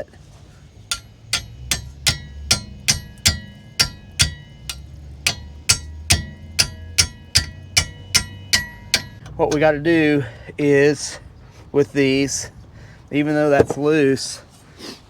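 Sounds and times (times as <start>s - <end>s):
hammer tapping on steel wrench: 0.9s - 9.7s.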